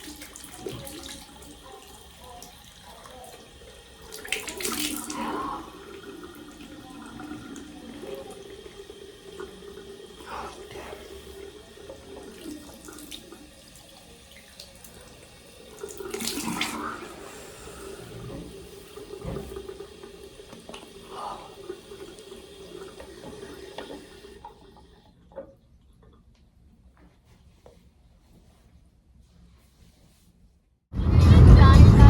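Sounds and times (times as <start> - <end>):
water splashing: 0.0 - 8.9, 14.6 - 19.9
tap water running into sink: 0.0 - 25.5.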